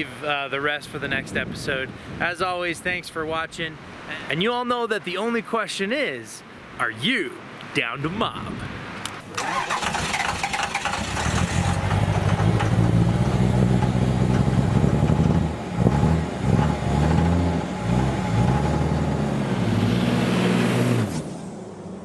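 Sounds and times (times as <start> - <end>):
vehicle engine revving: 9.4 - 21.4.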